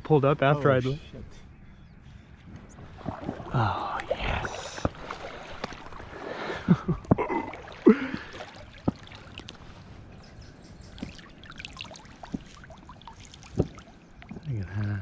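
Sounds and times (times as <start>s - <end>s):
water sloshing and splashing: 2.8s - 10.1s, 10.9s - 14.9s.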